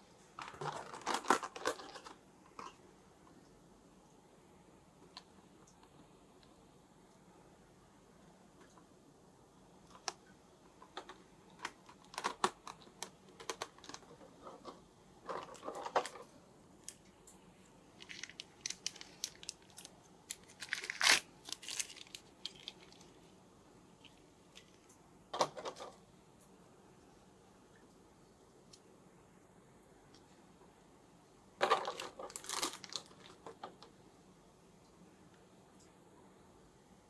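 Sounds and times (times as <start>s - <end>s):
plastic crinkling and tearing: 0.4s - 2.8s, 18.0s - 23.2s, 31.6s - 33.8s.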